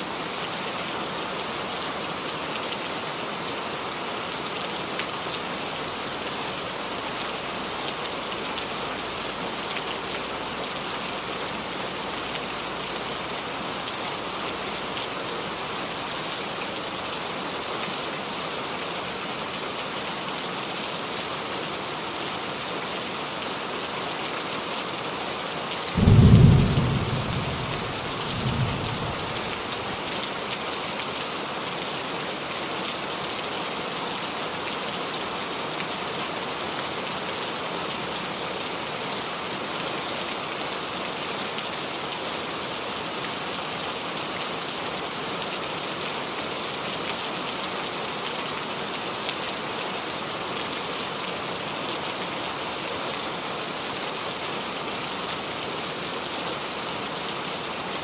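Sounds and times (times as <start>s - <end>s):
rain falling on a roof: 0.0s - 58.0s
thunder clap: 26.0s - 29.3s
faint thunder rumble: 26.0s - 29.7s.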